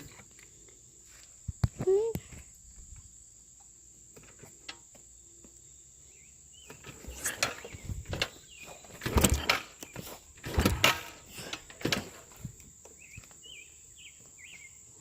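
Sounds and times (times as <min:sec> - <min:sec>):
high insect trill: 0:00.0 - 0:15.0
irregular thumps and rustles: 0:06.6 - 0:13.4.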